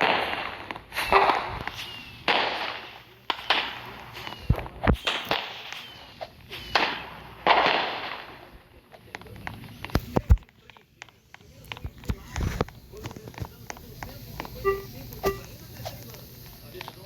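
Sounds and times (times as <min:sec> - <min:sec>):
sharp cracks with hissing bursts: 0:00.0 - 0:17.0.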